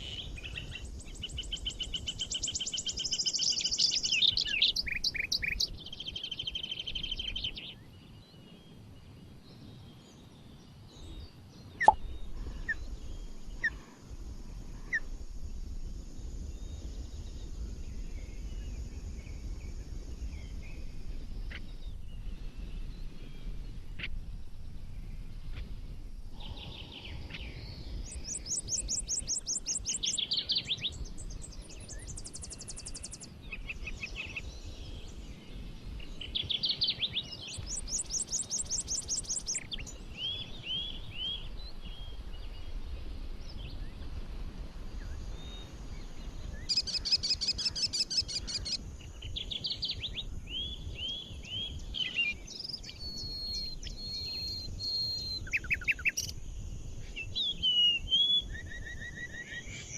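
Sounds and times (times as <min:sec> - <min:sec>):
songbirds singing and chirping: 0:00.0 - 0:59.9
bird whistle: 0:11.8 - 0:12.1, 0:53.0 - 0:56.3.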